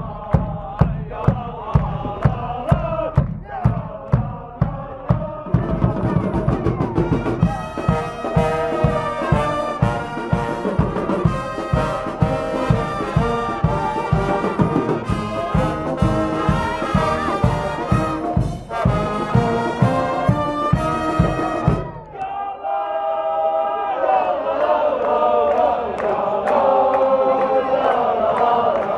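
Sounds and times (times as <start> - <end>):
bass drum beat: 0.0 - 22.0
brass band playing: 5.6 - 22.1.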